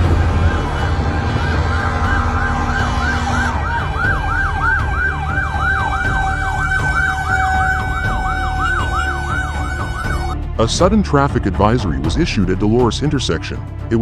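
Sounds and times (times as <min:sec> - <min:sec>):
emergency siren yelping: 0:00.0 - 0:10.4
low vehicle rumble: 0:00.0 - 0:14.0.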